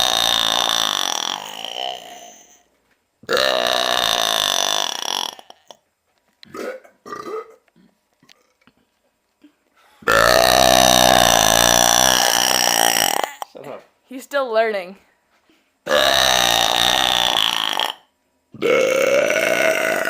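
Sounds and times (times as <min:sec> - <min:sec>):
person belching: 0:00.0 - 0:05.8, 0:06.4 - 0:08.6, 0:10.0 - 0:13.6, 0:15.9 - 0:20.0.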